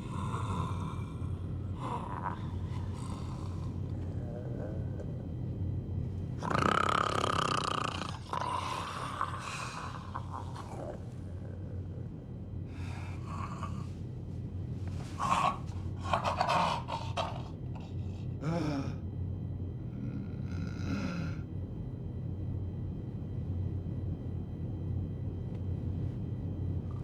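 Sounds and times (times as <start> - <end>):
person snoring: 0.0 - 5.3, 6.4 - 14.0, 14.8 - 19.0, 19.9 - 21.5
steady low hum: 0.0 - 27.0.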